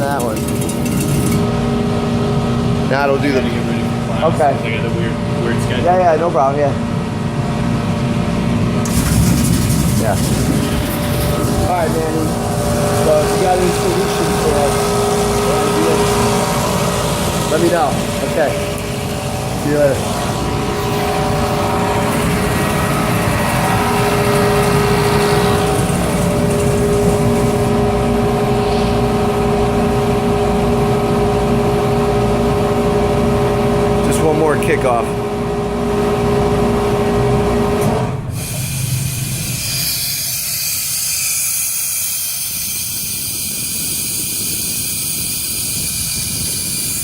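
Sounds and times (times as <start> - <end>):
air compressor running: 0.0 - 47.0
low rumble: 8.8 - 32.5.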